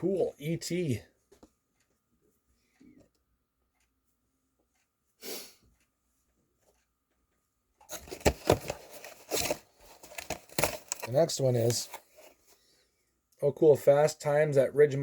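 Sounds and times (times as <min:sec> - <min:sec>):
breathy sniff: 0:05.2 - 0:05.7
packaging crackling and tearing: 0:07.9 - 0:12.0.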